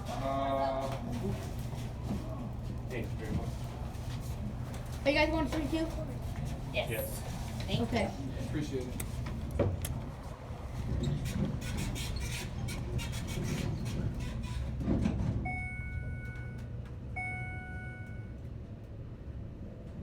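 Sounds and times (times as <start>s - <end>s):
elevator car humming: 0.0s - 20.0s
elevator electronic chime: 15.5s - 16.6s, 17.2s - 18.4s.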